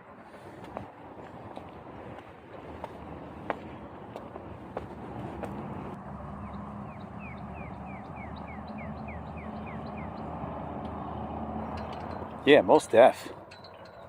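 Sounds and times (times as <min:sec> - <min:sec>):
bird singing: 0:06.0 - 0:12.4.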